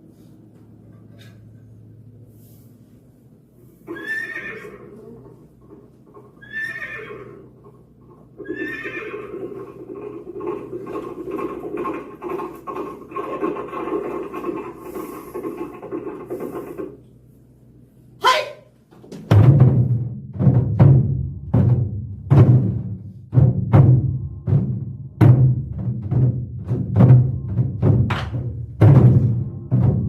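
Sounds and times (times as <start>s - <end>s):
horse whinnies: 3.8s - 5.4s, 6.2s - 7.6s, 8.4s - 10.2s
galloping hoofbeats: 7.1s - 17.1s.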